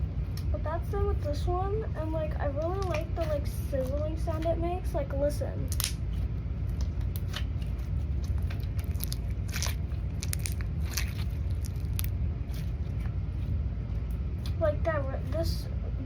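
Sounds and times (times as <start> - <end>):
slime bubbles popping: 8.8 - 12.1.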